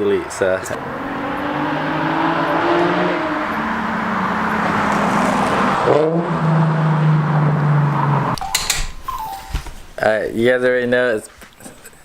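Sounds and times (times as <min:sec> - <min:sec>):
car engine revving: 0:00.2 - 0:08.4.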